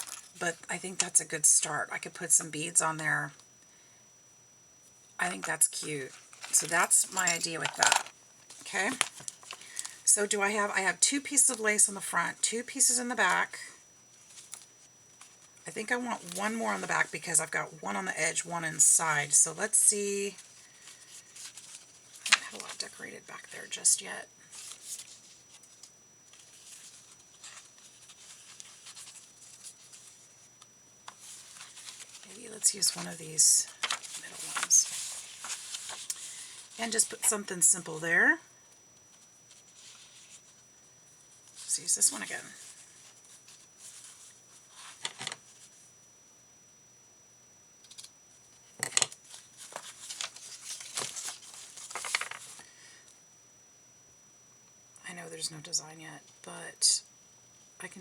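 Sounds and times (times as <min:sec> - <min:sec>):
paper rustling: 0:33.7 - 0:36.8, 0:49.2 - 0:52.6.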